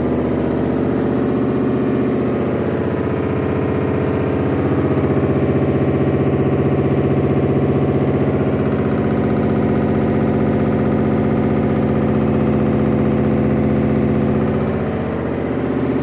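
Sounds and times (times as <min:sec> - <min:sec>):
washing machine spin drone: 0:00.0 - 0:16.0.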